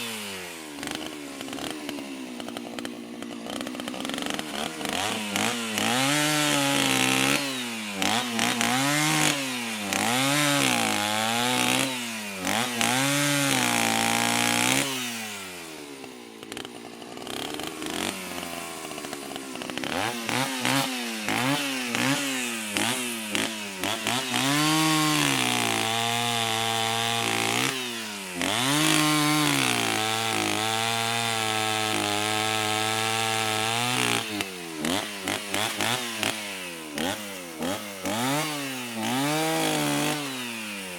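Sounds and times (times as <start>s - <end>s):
chainsaw engine revving: 0.0s - 40.9s.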